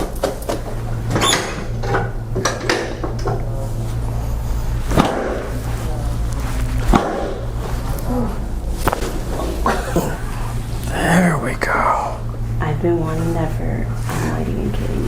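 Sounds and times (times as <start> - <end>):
steady low hum: 0.0 - 15.0
spinal joints cracking: 4.9 - 11.0.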